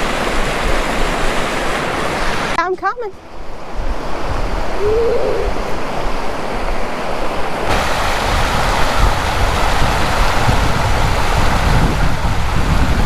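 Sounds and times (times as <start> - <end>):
wind buffeting microphone: 3.2 - 13.0.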